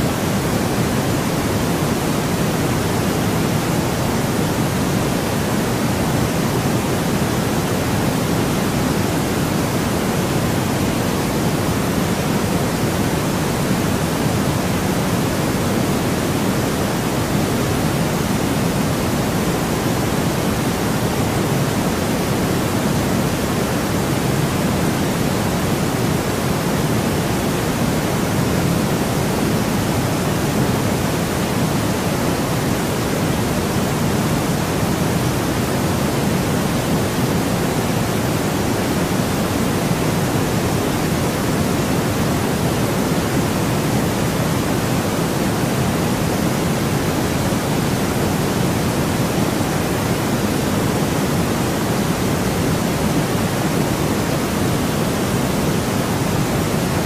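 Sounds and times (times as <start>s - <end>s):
steady white noise hiss: 0.0s - 57.0s.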